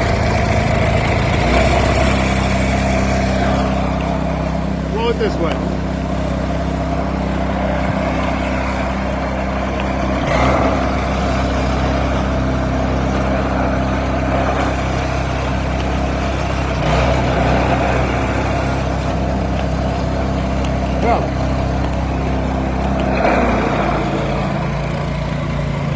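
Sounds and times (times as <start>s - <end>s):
snowblower engine running: 0.0s - 25.9s.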